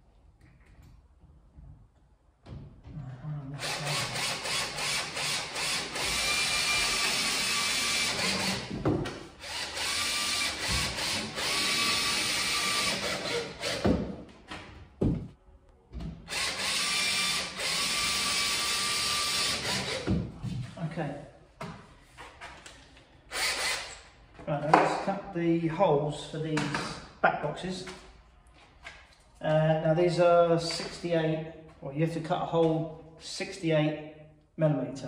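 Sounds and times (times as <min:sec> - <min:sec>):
electric drill motor whining: 0:03.6 - 0:08.7, 0:09.4 - 0:13.9, 0:16.3 - 0:20.1, 0:23.3 - 0:24.0.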